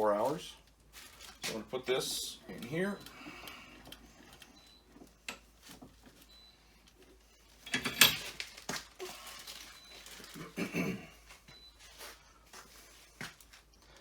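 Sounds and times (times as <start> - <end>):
plastic bag crinkling: 0.2 - 3.0, 7.4 - 13.7.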